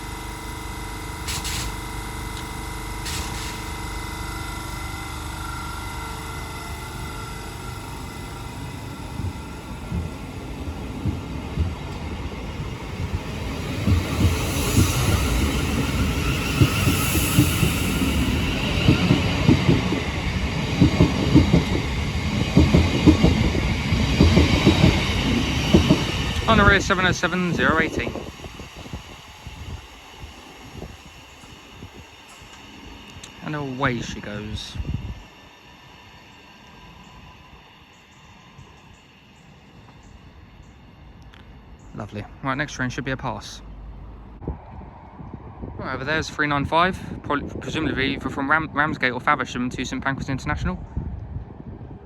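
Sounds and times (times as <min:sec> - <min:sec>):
electric train humming: 0:00.0 - 0:52.0
train wheels clattering on track: 0:01.0 - 0:34.8.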